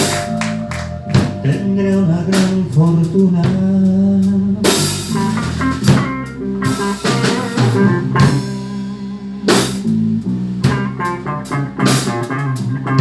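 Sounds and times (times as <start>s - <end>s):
blues band playing: 0.0s - 13.0s.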